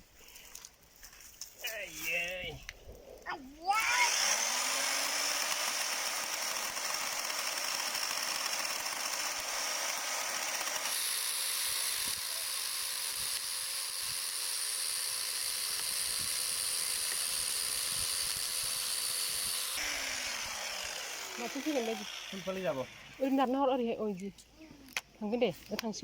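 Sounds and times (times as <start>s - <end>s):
electric chainsaw motor whining: 3.7s - 23.5s.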